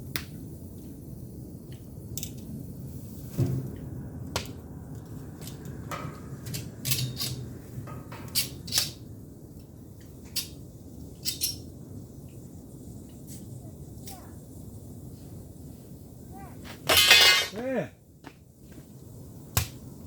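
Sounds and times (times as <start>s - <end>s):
firewood crackling and popping: 0.0s - 20.0s.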